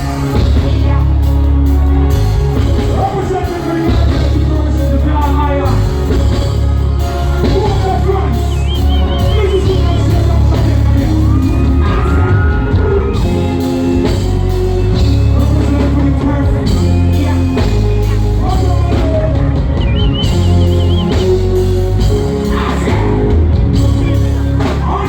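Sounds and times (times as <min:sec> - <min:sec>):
loud dancehall music: 0:00.0 - 0:25.0
person singing and shouting: 0:07.4 - 0:14.3, 0:14.9 - 0:25.0.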